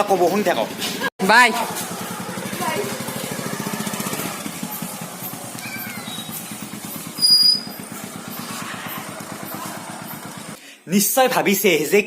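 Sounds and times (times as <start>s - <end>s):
motorcycle engine running: 0.0s - 10.6s.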